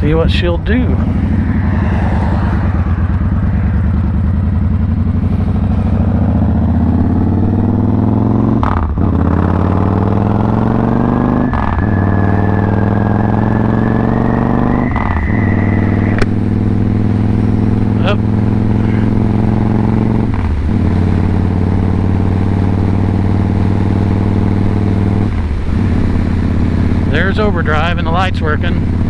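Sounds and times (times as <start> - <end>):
motorcycle engine accelerating: 0.0 - 29.0
thin high whine: 11.3 - 16.6.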